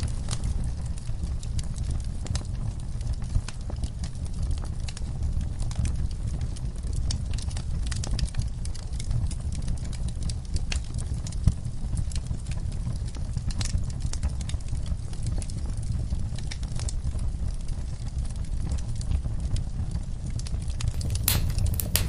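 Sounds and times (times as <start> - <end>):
wood crackling and popping: 0.0 - 17.3, 20.3 - 22.0
fire burning in fireplace: 0.0 - 22.0.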